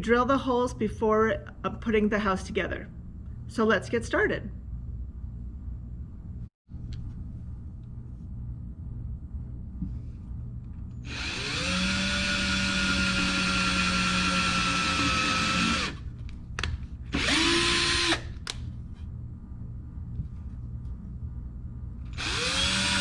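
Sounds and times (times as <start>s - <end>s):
electric drill drilling wood: 11.1s - 16.0s, 17.2s - 18.4s, 22.2s - 23.0s.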